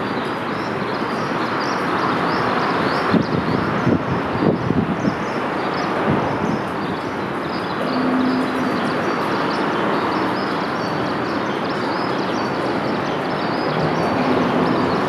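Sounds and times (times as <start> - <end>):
river water rushing: 7.0 - 15.0.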